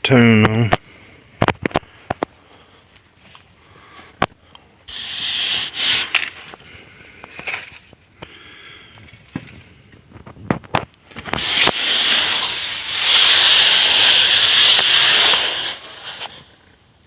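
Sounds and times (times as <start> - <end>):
aerosol spray can hissing: 4.9 - 6.4, 11.2 - 16.5.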